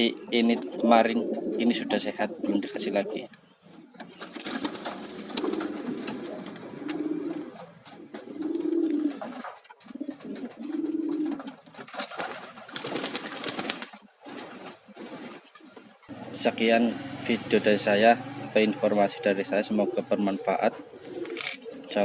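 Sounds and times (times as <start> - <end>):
pigeon cooing: 0.0 - 22.0.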